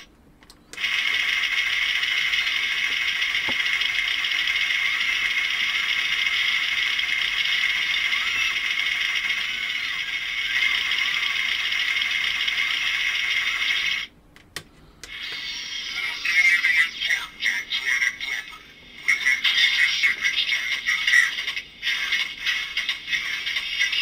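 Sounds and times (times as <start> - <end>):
mechanical rattling whir: 0.8 - 14.1.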